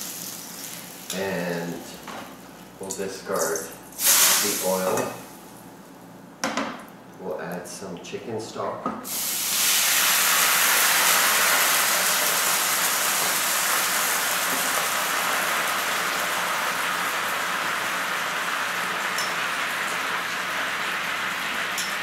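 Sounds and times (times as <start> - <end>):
stock sizzling in a hot frying pan: 0.0 - 1.8, 4.0 - 5.6, 9.1 - 22.0.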